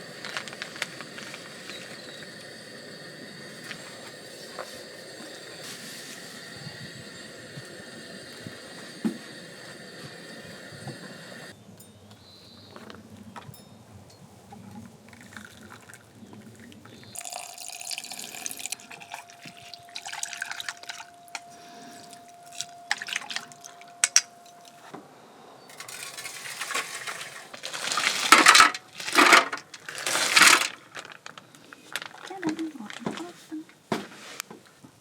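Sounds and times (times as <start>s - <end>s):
faint steady tone: 0.0s - 12.7s, 16.9s - 29.5s
liquid pouring and splashing: 15.1s - 21.1s, 22.0s - 24.2s, 25.8s - 31.2s.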